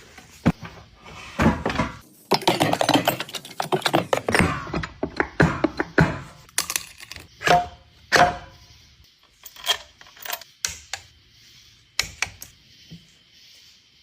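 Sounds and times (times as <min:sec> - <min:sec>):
metal parts clinking and knocking: 0:02.3 - 0:05.0, 0:06.4 - 0:07.6, 0:09.2 - 0:10.8.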